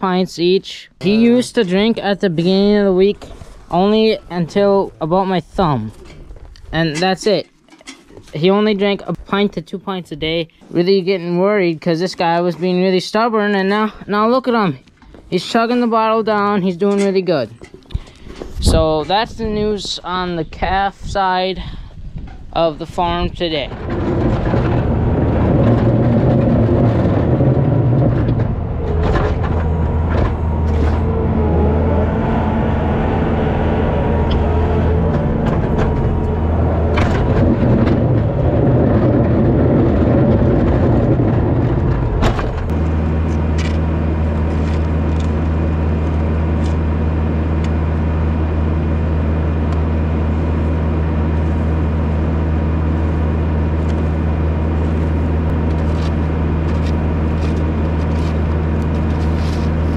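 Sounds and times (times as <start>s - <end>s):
loader engine running: 22.0s - 59.9s
knocks and clanks: 23.6s - 32.2s, 34.1s - 42.8s.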